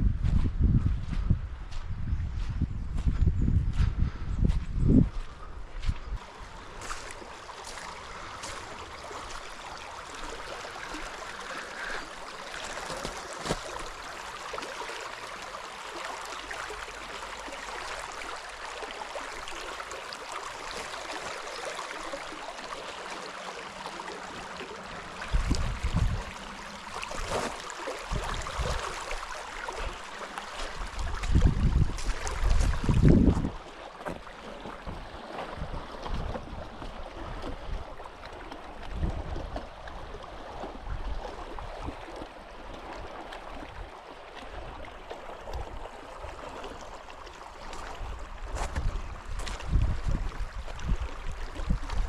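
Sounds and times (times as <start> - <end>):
wind buffeting microphone: 0.0 - 7.1, 25.2 - 29.2, 30.8 - 33.6, 38.8 - 42.0, 47.6 - 52.0
stream running water: 5.1 - 52.0.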